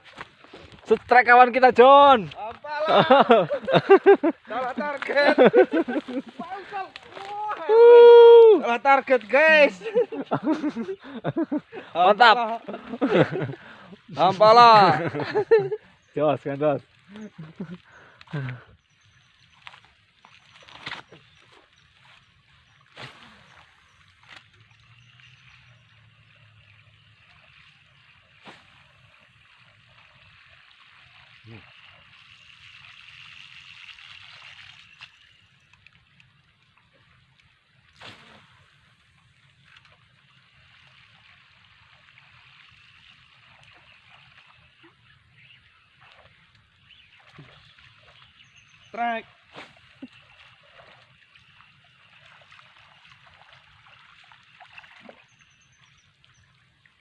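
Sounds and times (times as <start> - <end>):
water gurgling: 22.5 - 57.0
water hiss: 22.8 - 24.0, 26.2 - 35.5, 37.8 - 46.5.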